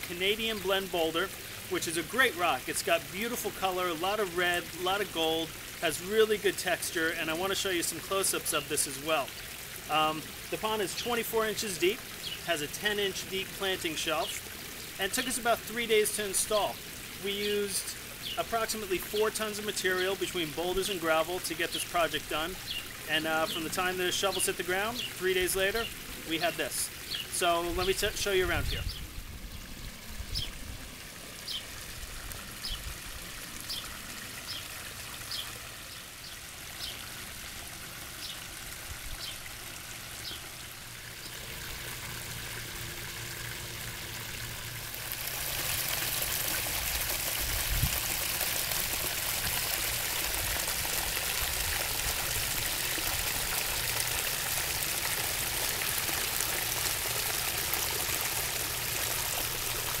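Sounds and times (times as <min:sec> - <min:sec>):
waterfall splashing into pond: 0:00.0 - 1:00.0.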